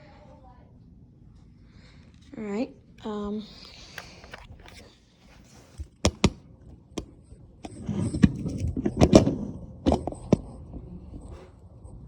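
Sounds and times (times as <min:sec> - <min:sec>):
sharp clicks: 0:06.0 - 0:06.4.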